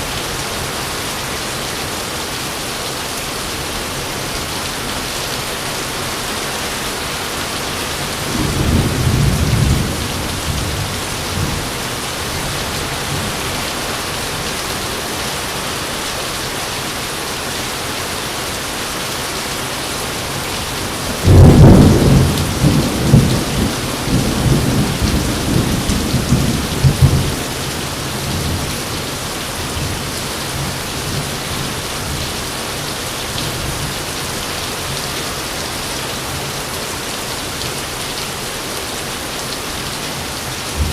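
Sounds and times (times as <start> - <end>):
heavy rain: 0.0 - 40.9
thunder: 21.2 - 27.4.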